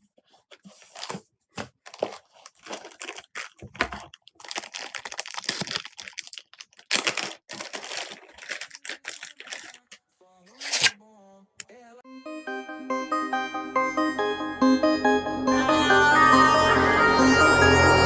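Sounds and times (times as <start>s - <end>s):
plastic packaging crinkling: 0.7s - 10.9s.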